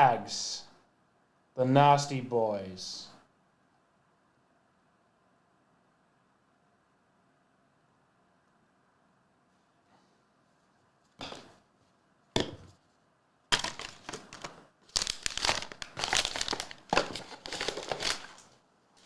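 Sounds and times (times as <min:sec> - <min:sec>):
packaging crinkling: 0:13.5 - 0:19.0.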